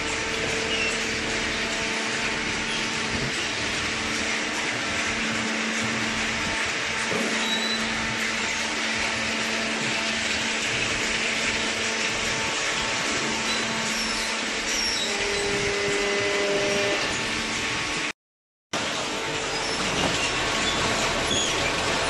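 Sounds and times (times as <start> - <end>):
machinery whirring: 0.0 - 18.1.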